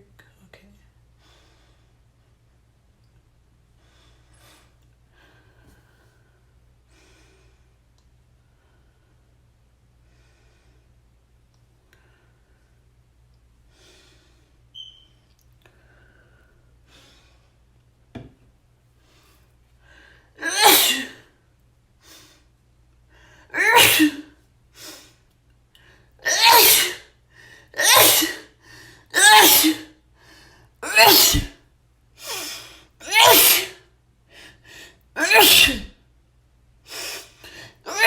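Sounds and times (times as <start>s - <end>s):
quiet breaths: 0.0s - 2.5s, 3.6s - 17.9s, 18.8s - 20.4s, 30.0s - 30.8s
person sneezing: 20.4s - 21.2s, 23.6s - 24.4s, 26.2s - 27.1s, 27.8s - 30.0s, 30.8s - 31.6s, 32.3s - 33.8s, 35.2s - 35.9s.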